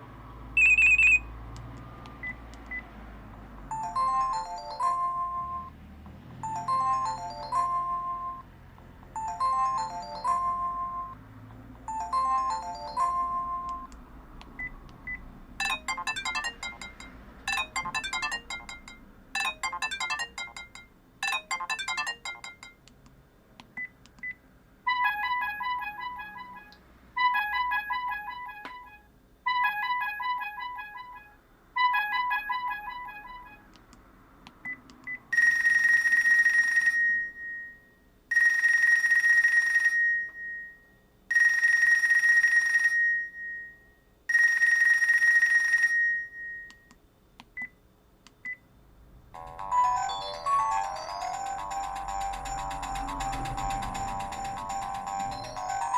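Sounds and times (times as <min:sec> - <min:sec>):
electronic ringtone melody: 0:00.6 - 0:01.3, 0:03.7 - 0:05.8, 0:06.4 - 0:11.2, 0:11.9 - 0:13.9, 0:15.6 - 0:22.8, 0:25.0 - 0:26.7, 0:49.4 - 0:55.9
phone beeping pattern: 0:00.6 - 0:01.3, 0:03.7 - 0:05.7, 0:06.4 - 0:08.5, 0:09.2 - 0:11.2, 0:11.9 - 0:13.9, 0:14.6 - 0:22.8, 0:49.4 - 0:55.9.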